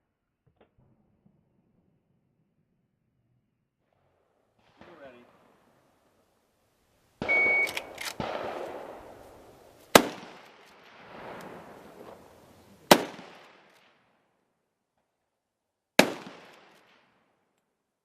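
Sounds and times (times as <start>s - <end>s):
shot timer beep: 7.2s - 7.9s
echoing gunshots: 7.2s - 12.3s, 12.9s - 13.7s, 16.0s - 17.2s.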